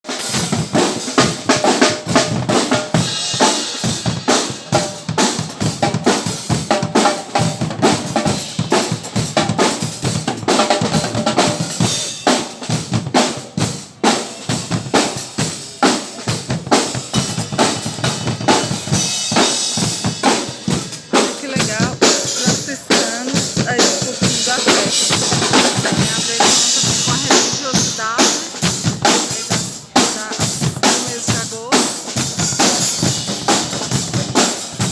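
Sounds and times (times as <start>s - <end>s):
percussion band drumming: 0.0s - 34.9s
deep bass drum beats: 16.6s - 34.9s.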